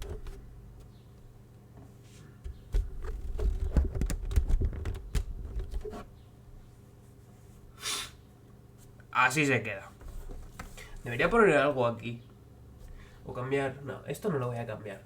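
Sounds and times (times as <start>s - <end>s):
keyboard and case clicking and knocking: 2.5s - 6.0s.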